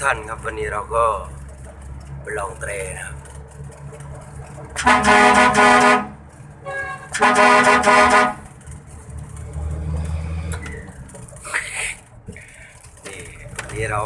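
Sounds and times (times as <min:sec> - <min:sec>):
vehicle electric horn honking: 0:04.8 - 0:08.4.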